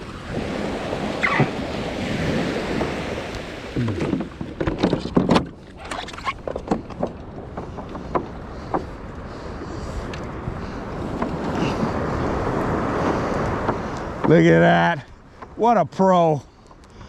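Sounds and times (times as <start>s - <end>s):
wind buffeting microphone: 0.0s - 15.6s
waves washing: 0.0s - 16.6s
knocks and thumps: 3.8s - 8.9s.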